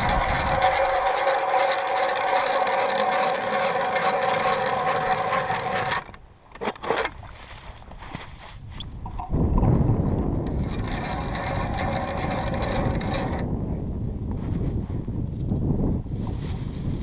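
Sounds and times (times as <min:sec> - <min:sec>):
ice auger grinding into ice: 0:00.0 - 0:07.4, 0:10.4 - 0:13.5.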